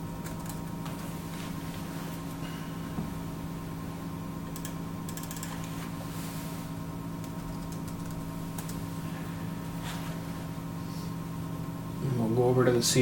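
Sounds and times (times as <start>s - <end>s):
steady electrical hum: 0.0s - 13.0s
typing on computer keyboard: 4.5s - 5.6s, 7.2s - 8.8s.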